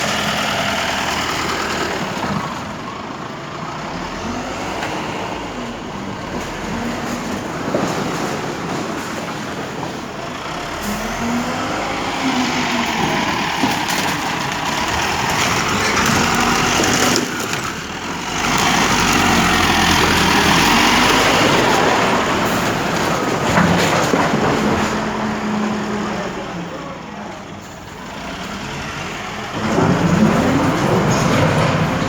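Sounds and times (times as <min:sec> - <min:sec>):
large engine running: 0:10.2 - 0:32.0.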